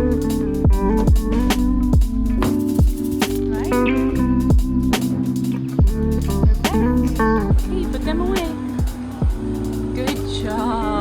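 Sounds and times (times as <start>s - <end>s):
background music melody: 0.0s - 11.0s
deep drum hit: 0.7s - 3.6s, 4.2s - 5.1s, 5.8s - 9.6s.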